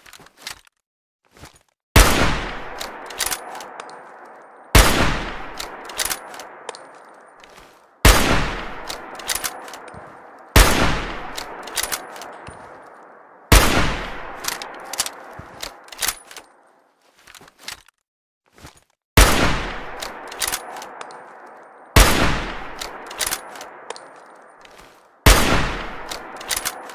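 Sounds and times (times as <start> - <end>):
rifle shots echoing: 2.0 - 16.6, 19.2 - 26.9
sharp metallic clicks: 2.4 - 7.5, 8.5 - 16.7, 19.6 - 26.9.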